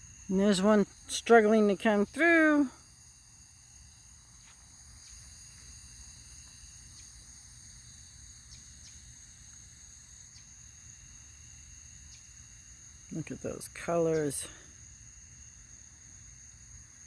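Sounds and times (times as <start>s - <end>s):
crickets trilling: 0.0s - 17.0s.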